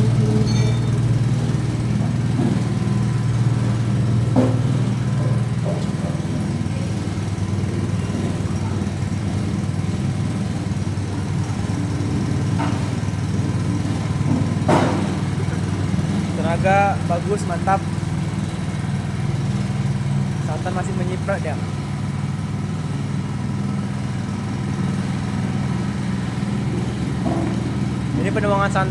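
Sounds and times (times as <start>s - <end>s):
small petrol engine running: 0.0s - 28.9s.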